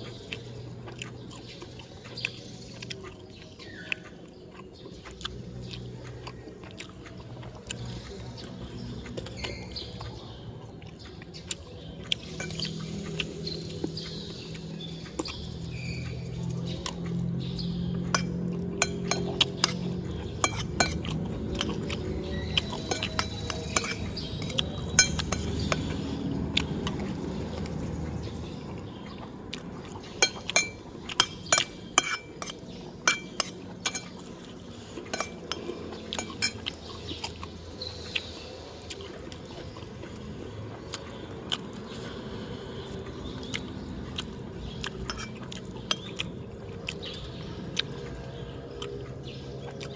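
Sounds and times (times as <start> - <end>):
cutlery clinking against plates: 12.0 - 14.1, 17.7 - 27.0, 30.0 - 37.3, 44.7 - 46.2.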